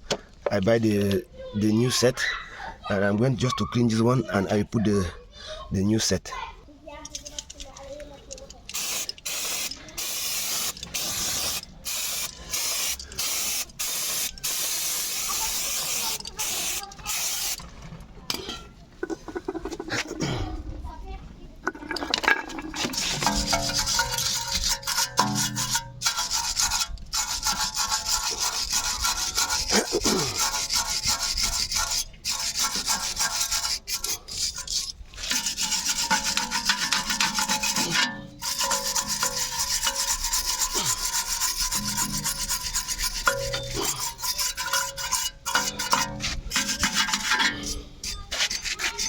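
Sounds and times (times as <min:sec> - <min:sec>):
scrubbing metal part: 0:07.1 - 0:17.7, 0:21.6 - 0:49.0.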